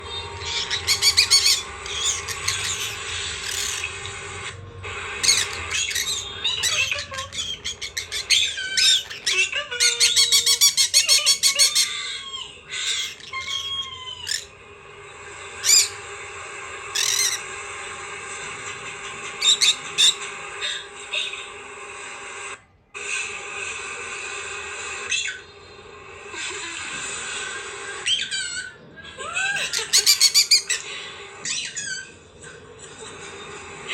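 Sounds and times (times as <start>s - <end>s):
birds calling and chattering: 0.0s - 21.7s, 22.3s - 33.9s.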